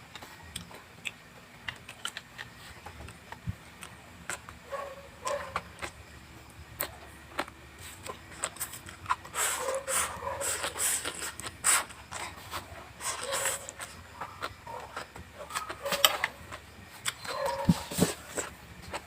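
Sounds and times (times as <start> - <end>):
chewing crunchy vegetables: 0.1 - 19.0.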